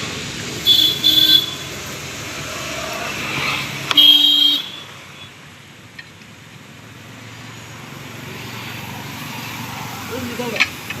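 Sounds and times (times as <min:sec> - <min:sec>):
approaching vehicle engine and tyres: 0:00.0 - 0:11.0
vehicle horn: 0:00.6 - 0:01.7, 0:03.9 - 0:04.9.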